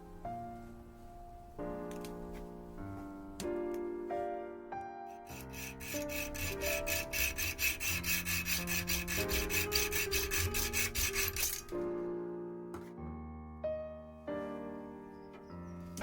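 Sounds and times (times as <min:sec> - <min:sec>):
piano music: 0:00.0 - 0:16.0
hand filing rasping strokes: 0:05.2 - 0:11.8.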